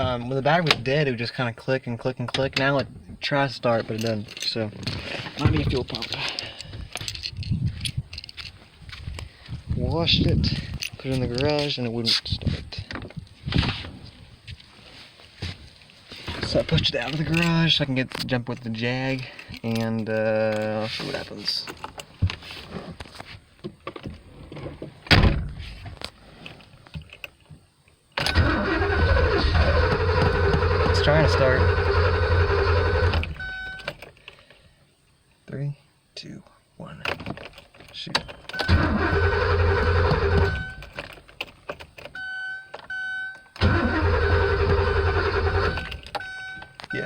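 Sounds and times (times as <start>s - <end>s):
engine cranking without starting: 28.2s - 33.4s, 38.3s - 42.1s, 43.5s - 46.2s.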